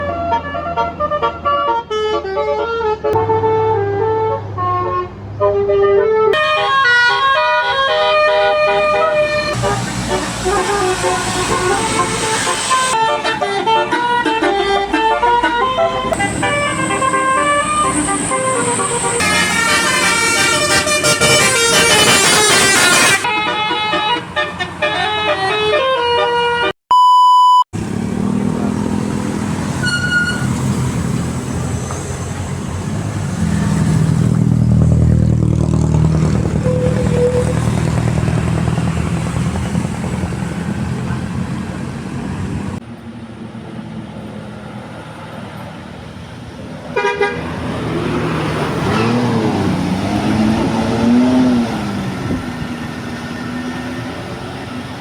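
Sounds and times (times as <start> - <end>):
musical bus horn playing notes: 0.0 - 26.7, 36.5 - 37.7, 47.0 - 47.6
bus engine rumbling: 0.0 - 26.8, 27.8 - 55.0
short electronic beep: 26.9 - 27.6.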